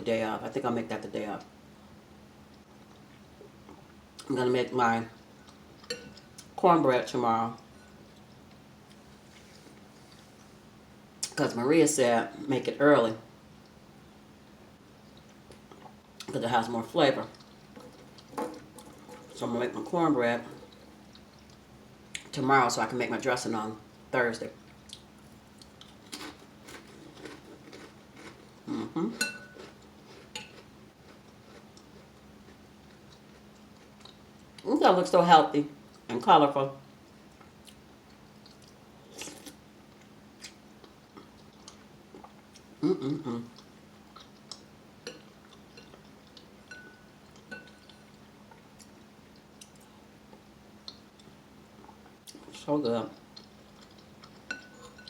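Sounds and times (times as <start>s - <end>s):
spoon clinking in bowl: 29.2s - 29.6s, 46.7s - 47.8s
faint eating clicks: 43.5s - 55.0s.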